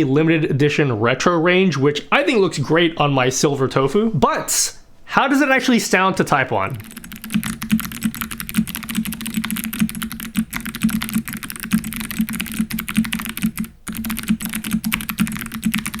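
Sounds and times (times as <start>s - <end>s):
fast typing on mechanical keyboard: 6.7s - 16.0s.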